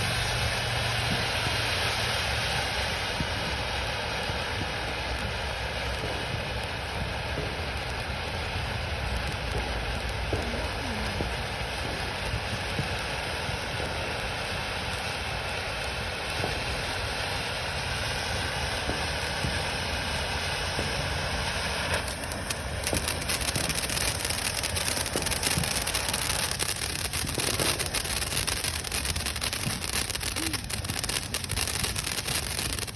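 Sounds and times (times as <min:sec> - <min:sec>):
fireworks crackling: 0:00.0 - 0:32.9
fireworks hissing: 0:00.0 - 0:32.9.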